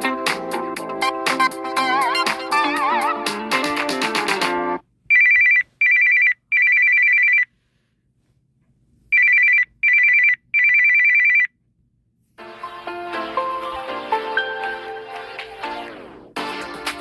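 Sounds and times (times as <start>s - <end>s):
trilling phone ringtone: 5.1s - 7.5s, 9.2s - 11.5s.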